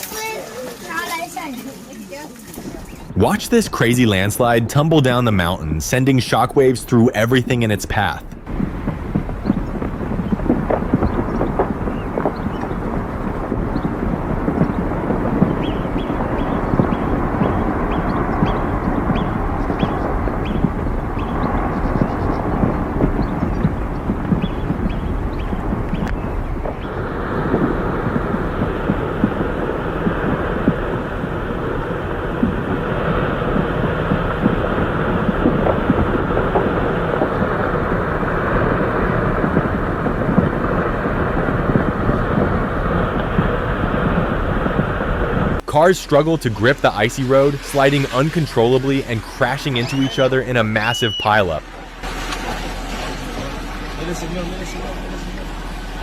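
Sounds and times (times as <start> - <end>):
landslide rumbling: 0.0 - 56.0
knocks of breaking rock: 8.4 - 30.8.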